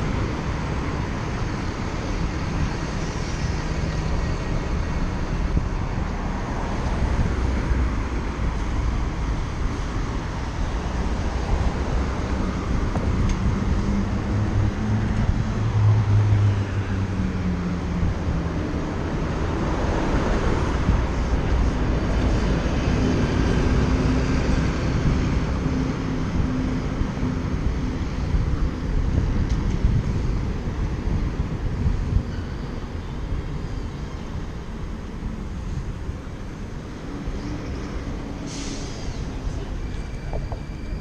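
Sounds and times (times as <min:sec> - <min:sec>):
vehicles passing close by: 0:00.0 - 0:41.0
wind rushing on microphone: 0:00.0 - 0:41.0.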